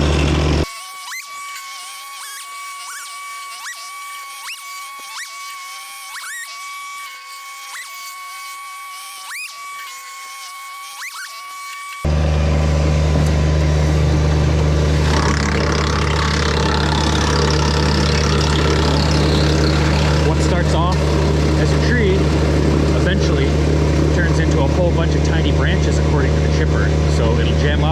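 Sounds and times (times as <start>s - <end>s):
tractor diesel engine running: 0.0s - 0.6s, 12.1s - 27.9s
wood chipper: 0.0s - 27.9s.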